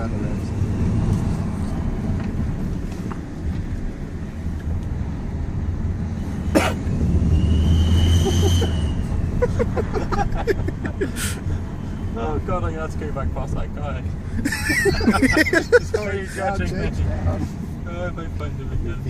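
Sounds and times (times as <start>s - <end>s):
car engine accelerating: 0.0s - 14.4s
high exhaust whistle: 7.1s - 9.3s.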